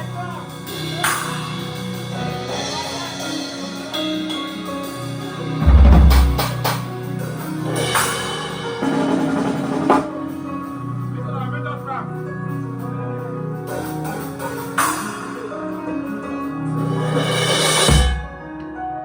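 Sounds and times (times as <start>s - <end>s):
bass and keyboard notes: 4.6s - 19.0s
heavy low boom: 5.6s - 6.7s
drum hits: 5.6s - 6.9s.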